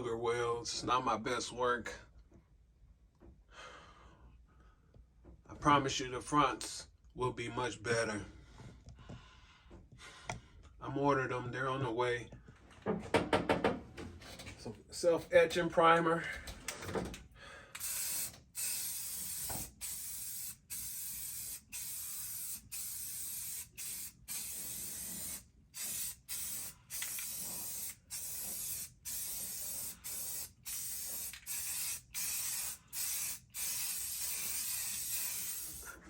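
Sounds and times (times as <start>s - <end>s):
aerosol can spraying: 17.8s - 36.0s.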